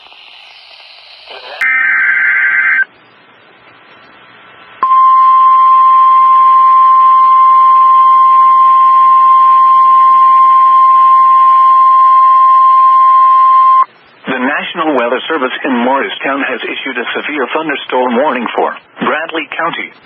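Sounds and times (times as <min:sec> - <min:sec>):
faint hiss: 0:00.0 - 0:01.6
digital data burst: 0:00.0 - 0:02.9
steady alarm tone: 0:04.8 - 0:13.9.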